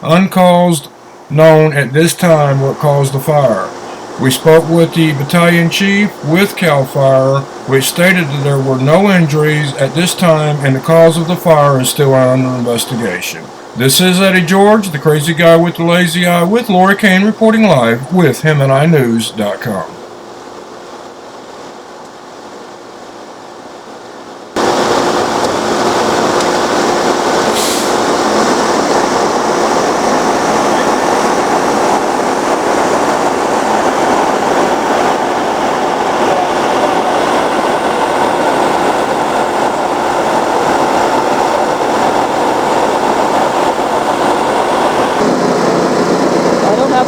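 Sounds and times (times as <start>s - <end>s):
loud mechanical noise with hum: 0.0s - 47.0s
quiet steady hiss: 0.0s - 47.0s
short hiss: 27.4s - 28.1s.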